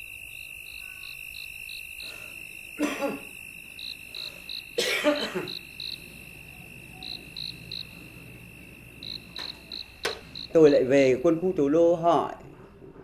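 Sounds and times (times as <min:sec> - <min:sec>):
insects chirping: 0:00.0 - 0:12.4
person coughing: 0:02.8 - 0:03.3, 0:04.8 - 0:05.6
steady high whine: 0:05.2 - 0:11.7.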